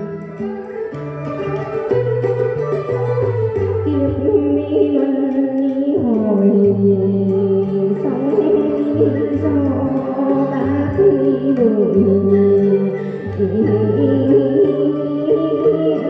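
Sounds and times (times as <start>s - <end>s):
sliding lead melody: 0.0s - 4.7s.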